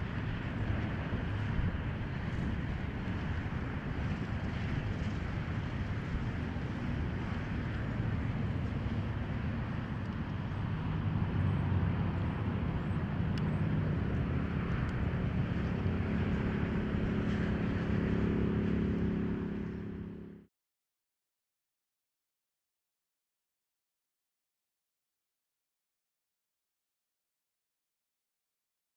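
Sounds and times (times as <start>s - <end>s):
low engine drone: 0.0s - 20.5s.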